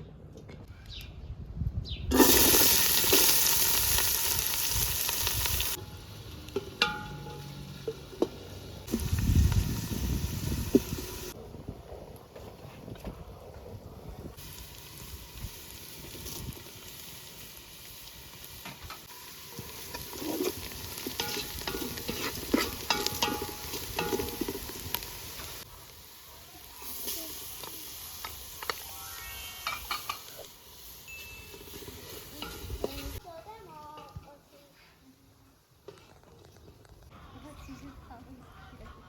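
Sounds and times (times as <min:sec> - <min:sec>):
food sizzling in a pot: 0:02.1 - 0:11.4, 0:14.4 - 0:33.3
utensil stirring food: 0:19.0 - 0:25.7.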